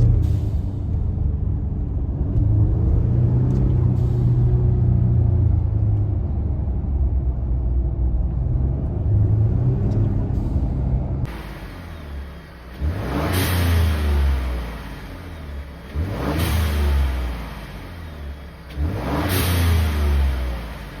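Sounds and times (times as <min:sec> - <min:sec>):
truck engine revving: 0:08.2 - 0:21.0.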